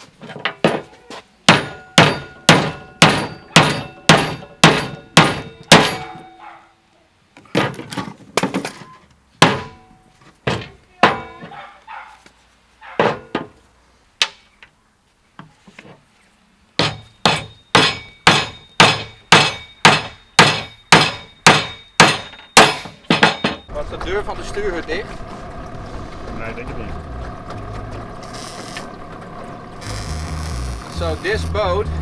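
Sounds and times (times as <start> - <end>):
hammer striking metal: 1.5 - 6.2, 16.8 - 24.0.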